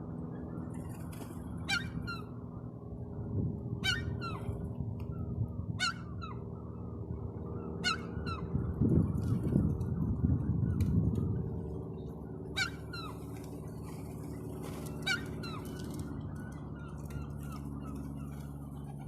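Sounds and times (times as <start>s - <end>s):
steady low rumble: 0.0s - 19.0s
gull calling: 3.8s - 4.5s, 5.8s - 6.6s, 7.7s - 8.6s, 12.5s - 13.3s, 15.0s - 15.8s.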